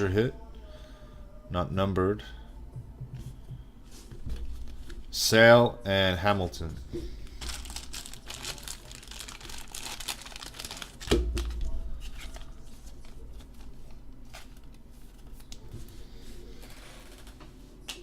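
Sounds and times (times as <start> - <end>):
wrapper crinkling and tearing: 7.3 - 15.3.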